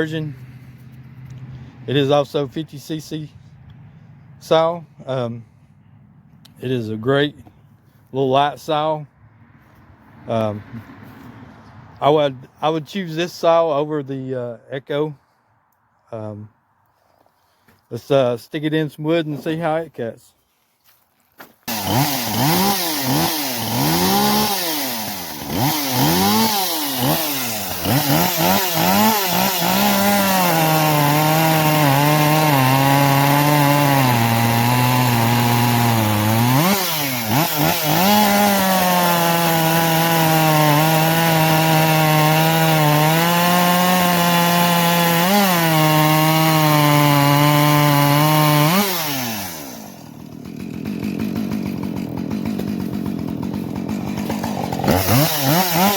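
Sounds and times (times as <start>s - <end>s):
chainsaw cutting wood: 21.4s - 55.9s
chainsaw revving: 21.7s - 55.9s.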